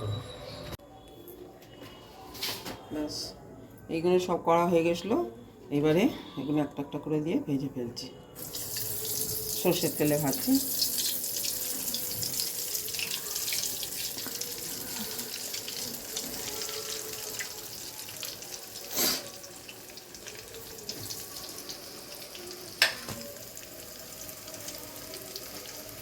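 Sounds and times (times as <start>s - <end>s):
deep-frying crackling sizzle: 8.4s - 26.0s.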